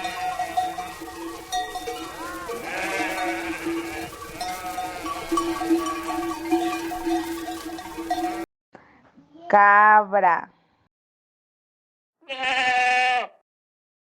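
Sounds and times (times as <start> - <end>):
sheep bleating: 0.0 - 8.4, 12.2 - 13.4.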